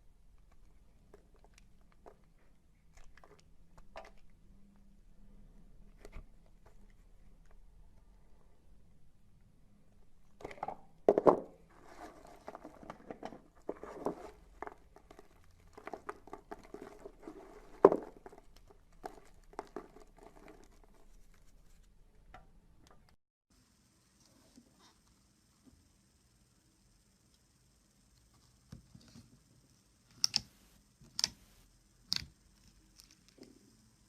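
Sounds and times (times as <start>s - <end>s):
material crackling and crunching: 10.4s - 21.8s.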